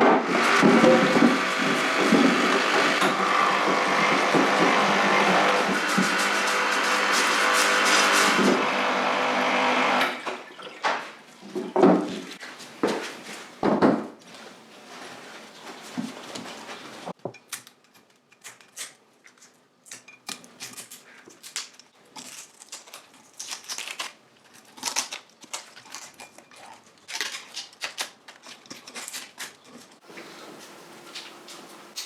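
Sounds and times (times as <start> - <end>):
scraping and brushing metal: 0.4 - 8.7.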